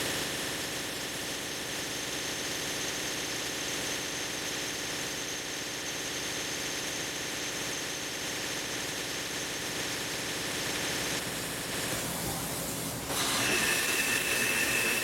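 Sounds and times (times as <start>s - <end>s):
machine tool whirring and hissing: 11.1s - 15.0s.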